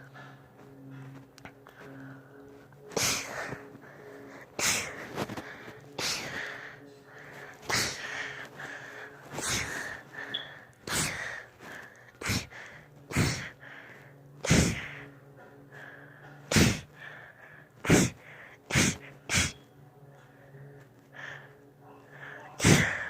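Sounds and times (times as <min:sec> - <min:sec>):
girl sneezing: 0:22.6 - 0:23.0.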